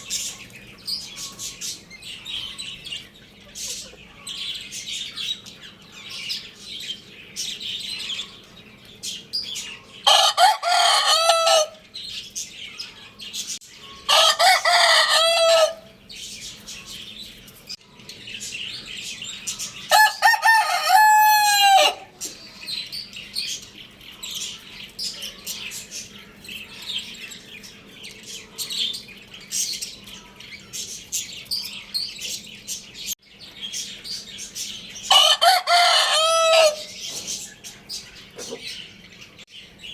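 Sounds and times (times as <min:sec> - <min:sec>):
small birds chirping: 0:00.0 - 0:39.9
rooster crowing: 0:10.0 - 0:11.8, 0:14.1 - 0:16.0, 0:19.9 - 0:22.2, 0:35.1 - 0:37.0.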